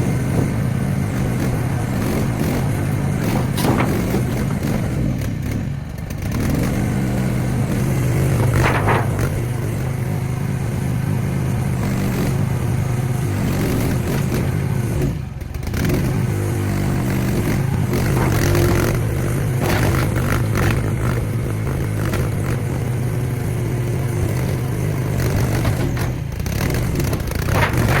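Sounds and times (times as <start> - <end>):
excavator engine running: 0.0 - 28.0
metal scraping and clattering: 2.1 - 5.3, 8.1 - 10.0, 17.9 - 21.4, 25.3 - 28.0.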